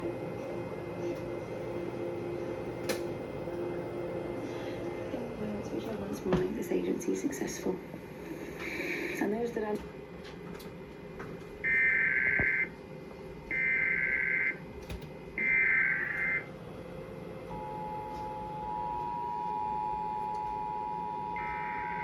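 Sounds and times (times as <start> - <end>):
steady two-tone attention signal: 17.5 - 22.0.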